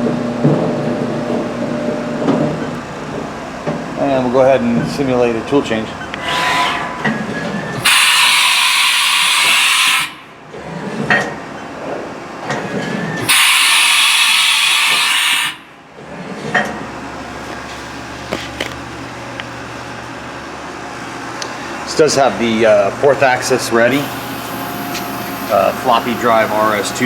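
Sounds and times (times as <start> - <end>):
carousel mechanical whirring: 4.0 - 8.7, 21.0 - 27.0
compressed air hiss: 7.8 - 10.3, 13.2 - 15.7.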